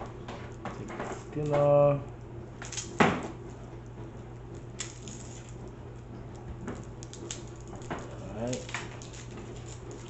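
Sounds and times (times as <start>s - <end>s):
steady low hum: 0.0s - 10.0s
garlic skin crackling: 4.4s - 10.0s.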